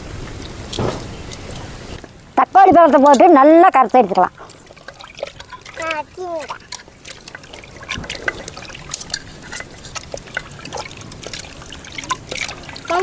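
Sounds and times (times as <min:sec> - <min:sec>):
small splashes and drips: 0:00.0 - 0:13.0
tomatoes squeezed in water: 0:02.8 - 0:13.0.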